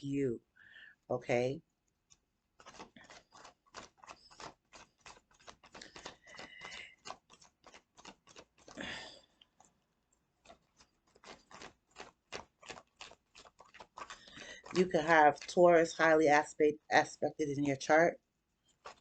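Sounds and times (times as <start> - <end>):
cards sliding rasp: 2.0 - 16.1, 18.6 - 19.0
cards clicking and snapping: 2.1 - 9.7, 10.4 - 14.8, 18.7 - 19.0.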